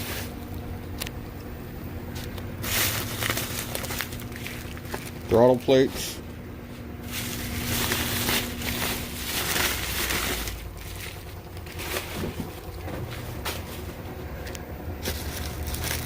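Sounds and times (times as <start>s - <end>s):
packaging crinkling and rustling: 2.2s - 6.0s, 7.0s - 16.0s.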